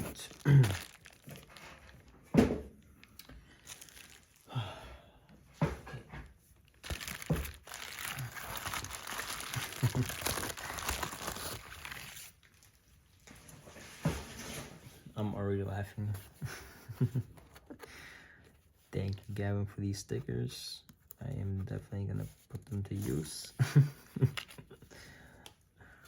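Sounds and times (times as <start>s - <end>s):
plastic packaging crinkling: 0.0s - 2.4s, 3.0s - 4.5s, 6.6s - 13.0s.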